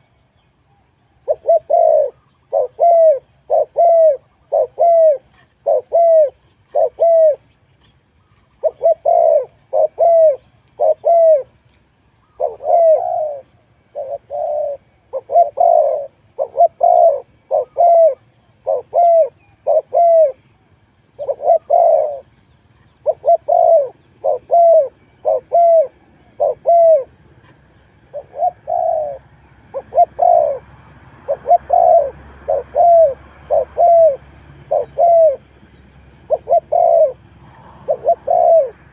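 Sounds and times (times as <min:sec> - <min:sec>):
dove cooing: 0:00.0 - 0:07.5, 0:08.2 - 0:38.9.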